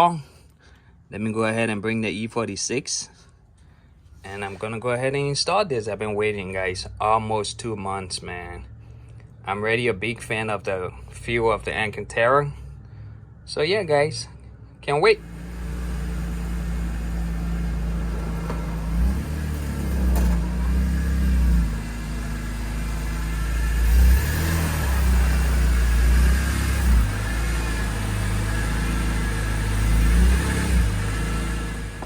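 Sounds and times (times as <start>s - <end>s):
car engine running: 14.4s - 32.0s.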